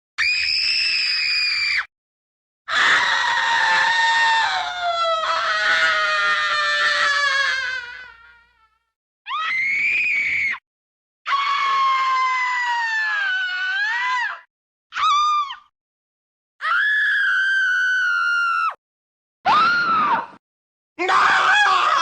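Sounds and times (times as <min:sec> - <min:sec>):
person screaming: 0:21.0 - 0:22.0.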